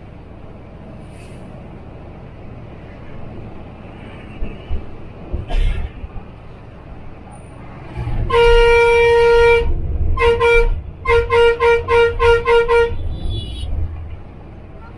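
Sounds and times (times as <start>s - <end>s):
engine and road rumble: 0.0s - 14.9s
bus horn honking: 8.0s - 13.9s.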